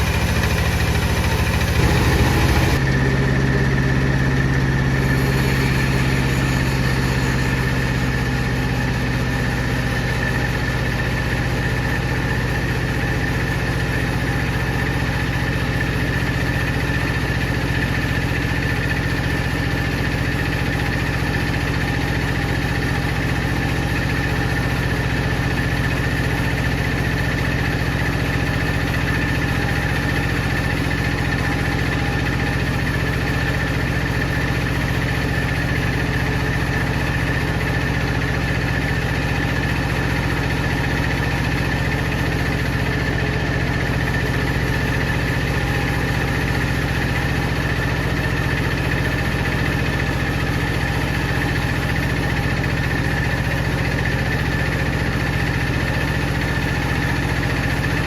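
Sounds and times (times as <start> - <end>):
high whine: 0.0 - 9.1
sawing machinery drone: 0.0 - 22.0, 22.6 - 55.3.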